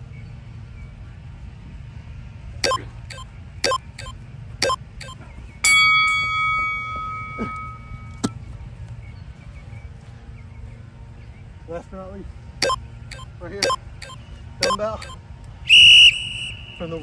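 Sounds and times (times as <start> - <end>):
interval timer beeping: 2.6 - 8.3, 12.6 - 15.2.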